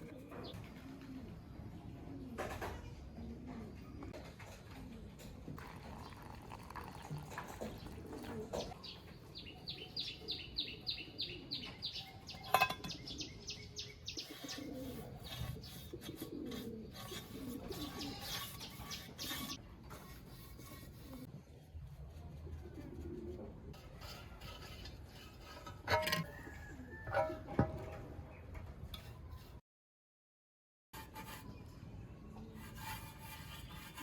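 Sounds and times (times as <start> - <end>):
pigeons cooing: 0.0 - 6.6, 10.1 - 19.6, 22.4 - 23.8
quick rhythmic scraping: 14.2 - 21.3.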